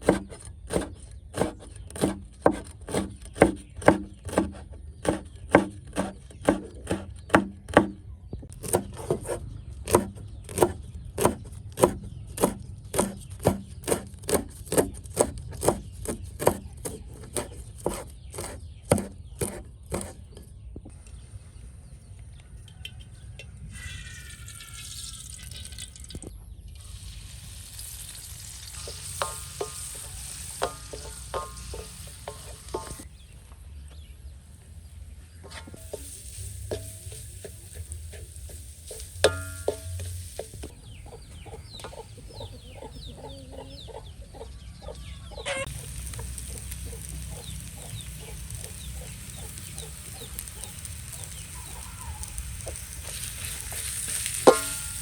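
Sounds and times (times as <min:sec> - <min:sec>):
knife chopping on wooden board: 0:00.0 - 0:08.0, 0:08.6 - 0:20.2.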